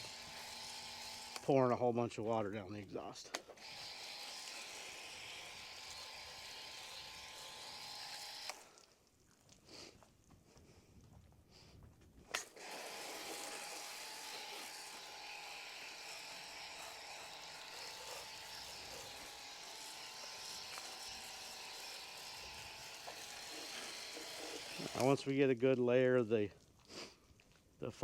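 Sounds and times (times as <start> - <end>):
faint motor buzz: 0.0 - 1.4, 3.6 - 8.7, 12.6 - 25.1.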